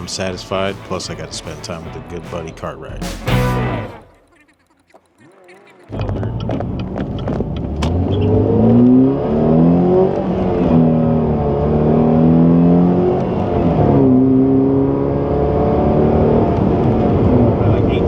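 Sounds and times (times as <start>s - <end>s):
car engine accelerating hard: 5.9s - 18.0s.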